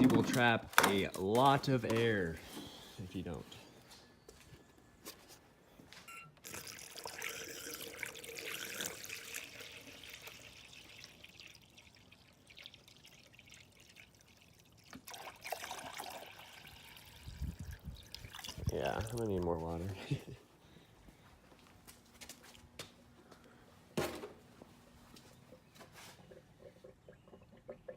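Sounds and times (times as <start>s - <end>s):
water pouring and splashing: 6.4s - 19.8s.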